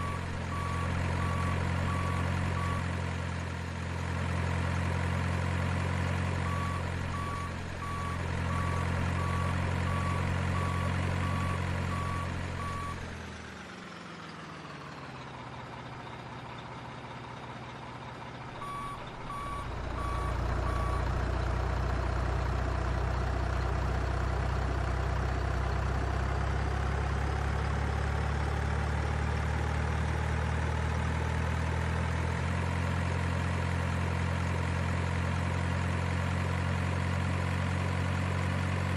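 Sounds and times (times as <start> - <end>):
reversing beeps: 0.0 - 2.9, 6.4 - 13.0, 18.6 - 21.2
simulated diesel engine running: 0.0 - 38.9.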